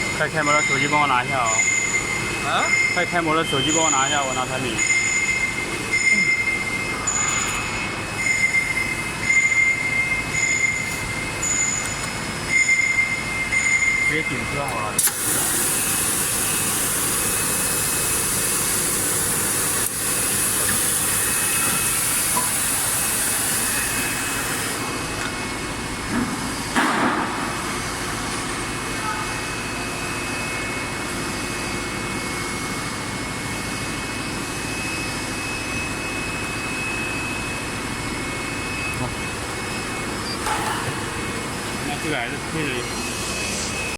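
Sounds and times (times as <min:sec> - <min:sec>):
machine mechanical hum: 0:00.0 - 0:43.9.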